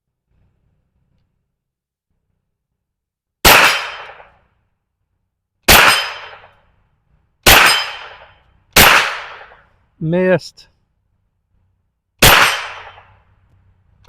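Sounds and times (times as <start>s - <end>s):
carbine gunshots: 3.4s - 4.4s, 5.7s - 6.5s, 7.4s - 9.6s, 12.2s - 13.1s.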